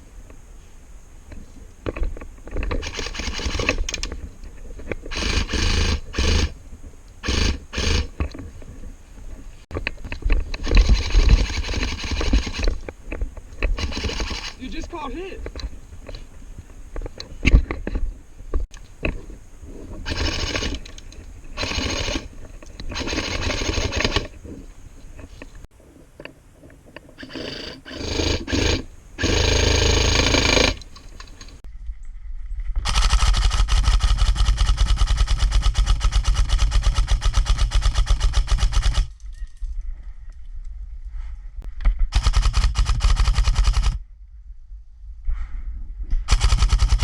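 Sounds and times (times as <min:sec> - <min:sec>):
airsoft guns firing: 0:02.7 - 0:04.1, 0:05.1 - 0:06.6, 0:10.5 - 0:16.4, 0:18.7 - 0:24.6, 0:27.2 - 0:31.6.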